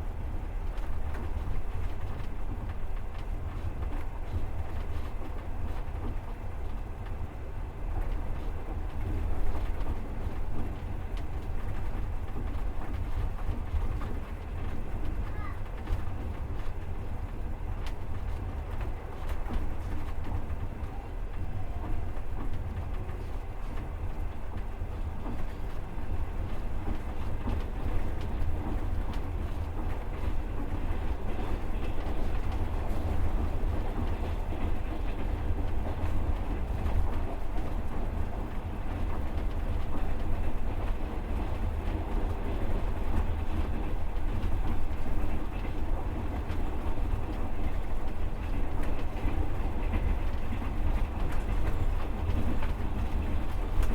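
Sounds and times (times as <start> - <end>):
train carriage rumbling: 0.0 - 53.9.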